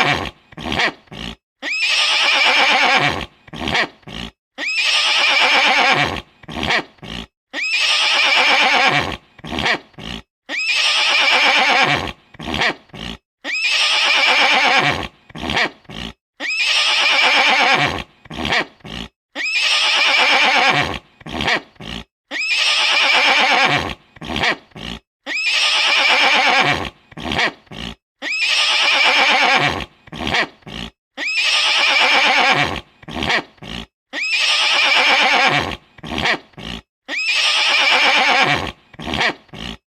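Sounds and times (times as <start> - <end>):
horse whinnying: 0.0 - 39.8.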